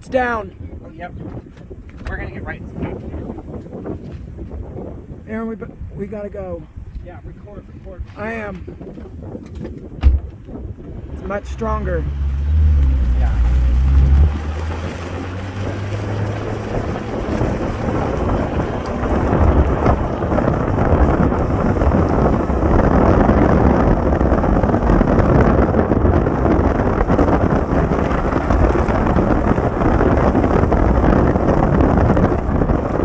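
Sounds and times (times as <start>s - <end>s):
storm wind buffeting microphone: 0.0s - 33.0s
rain: 11.8s - 33.0s.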